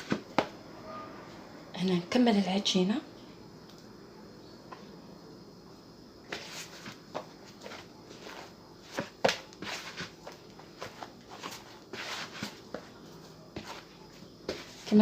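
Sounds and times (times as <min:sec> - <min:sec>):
hands kneading dough: 0:06.3 - 0:15.0.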